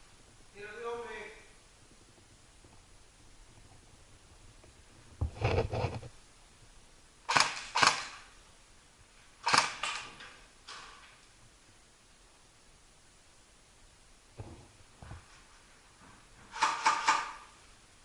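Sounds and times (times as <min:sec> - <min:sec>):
airsoft gun shots cracking: 0:07.3 - 0:08.3, 0:09.4 - 0:10.1.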